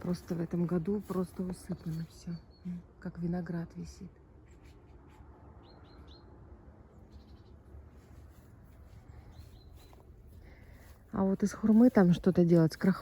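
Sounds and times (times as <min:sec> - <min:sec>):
low outdoor background: 0:00.0 - 0:13.0
small bird chirping: 0:01.1 - 0:03.0, 0:05.6 - 0:07.7, 0:09.1 - 0:10.1.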